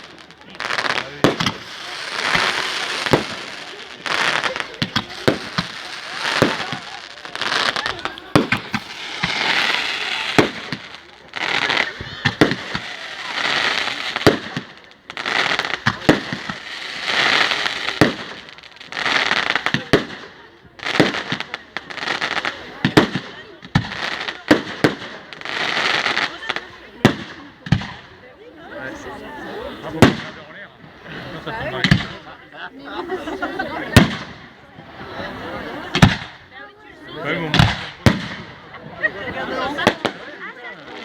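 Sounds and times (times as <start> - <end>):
firework shells bursting: 0.0 - 20.3
fireworks hissing crackle: 0.0 - 41.0.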